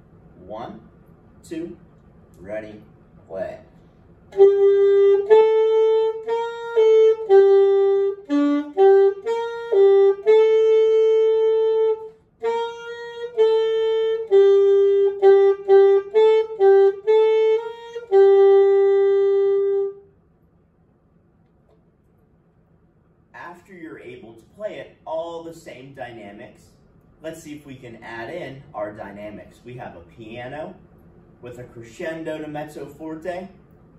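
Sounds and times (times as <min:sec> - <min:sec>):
wind instrument melody: 0:04.3 - 0:20.1.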